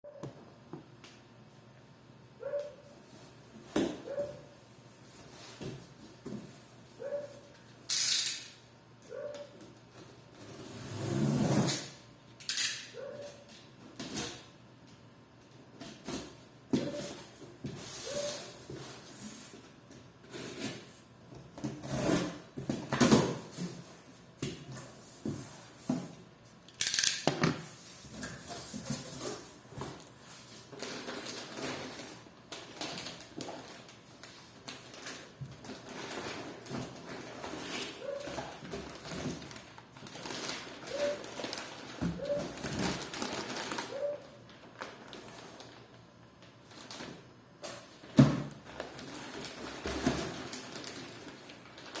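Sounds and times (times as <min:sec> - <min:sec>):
packaging rustling and crinkling: 0:27.7 - 0:52.0.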